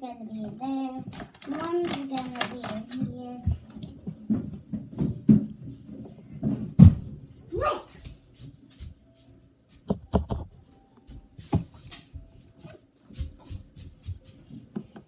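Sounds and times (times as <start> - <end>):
toys knocking on hard surface: 9.9 - 10.5.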